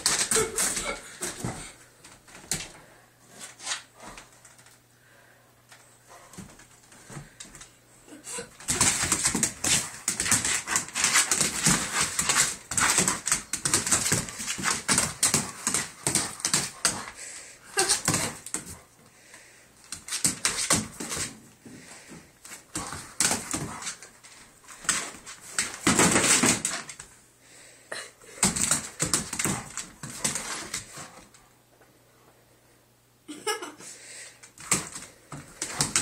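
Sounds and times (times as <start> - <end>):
dog claws scrabbling on floor: 8.6 - 17.2.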